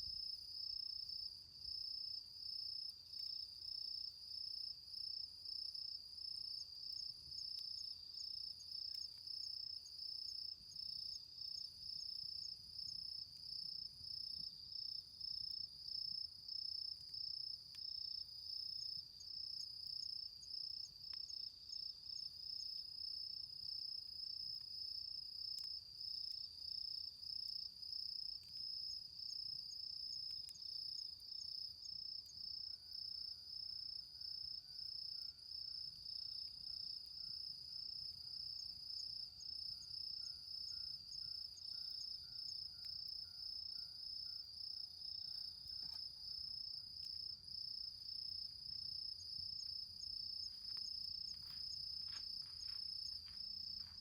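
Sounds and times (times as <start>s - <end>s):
crickets trilling: 0.2s - 54.0s
faint crackles: 49.8s - 54.0s.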